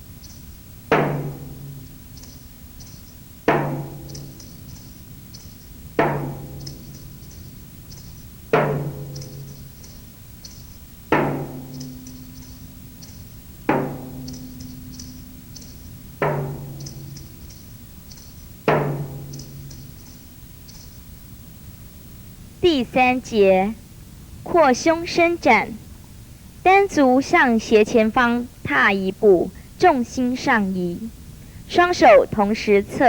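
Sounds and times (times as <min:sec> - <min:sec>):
light high ticks: 0:04.0 - 0:08.3, 0:09.0 - 0:10.8, 0:11.6 - 0:18.5, 0:19.2 - 0:21.0
deep struck ringing notes: 0:11.1 - 0:17.6, 0:18.7 - 0:20.2.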